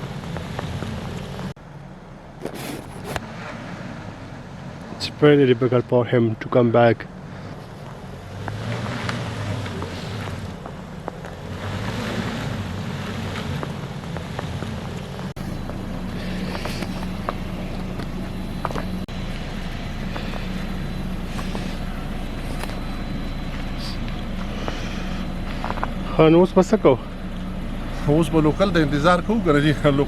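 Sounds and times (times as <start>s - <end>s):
vehicle engine running: 0.0s - 30.0s.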